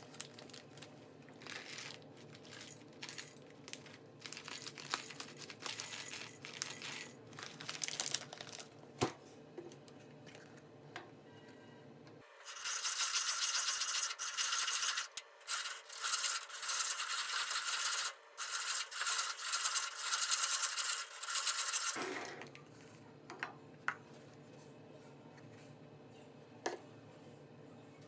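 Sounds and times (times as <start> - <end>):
hand-cranked coffee grinder grinding: 12.4 - 22.5.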